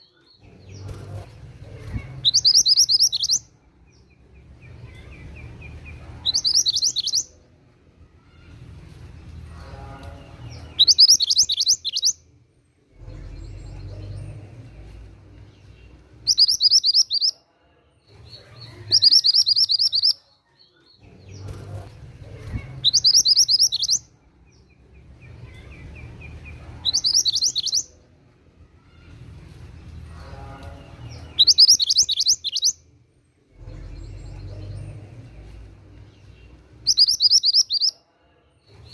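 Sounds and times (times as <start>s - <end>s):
songbird singing high notes: 2.2s - 3.4s, 6.3s - 7.3s, 10.8s - 12.2s, 16.2s - 17.4s, 18.9s - 20.2s, 22.8s - 24.0s, 26.8s - 27.9s, 31.2s - 32.8s, 36.8s - 38.0s.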